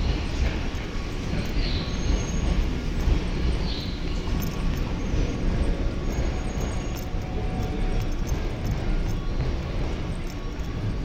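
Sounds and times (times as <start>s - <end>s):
railway station ambience: 0.0s - 11.0s
steady low rumble: 0.0s - 11.0s.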